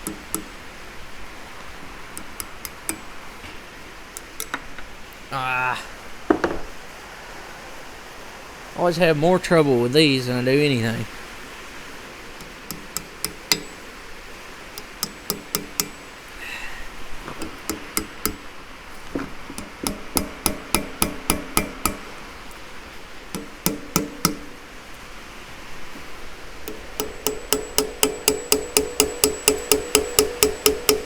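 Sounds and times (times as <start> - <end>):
hammer tapping on steel: 0.0 - 0.8, 2.1 - 3.2, 4.2 - 4.8, 12.4 - 14.0, 14.8 - 16.4, 17.2 - 18.6, 19.2 - 22.2, 23.4 - 24.6, 26.7 - 31.0.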